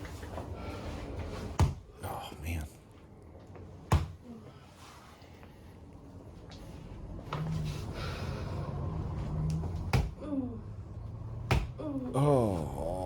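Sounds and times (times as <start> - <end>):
person groaning: 11.8 - 13.0.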